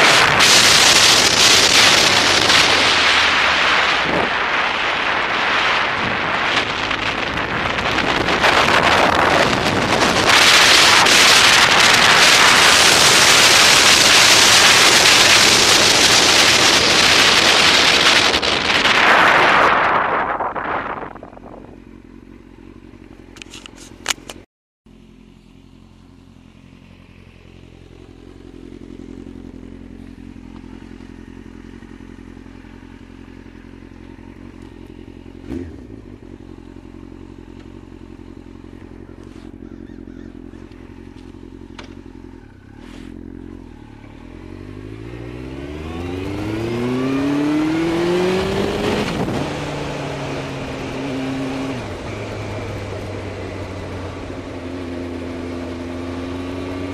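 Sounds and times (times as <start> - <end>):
wind rush: 0.0 - 21.8, 46.0 - 52.9
motorcycle engine: 0.0 - 56.9.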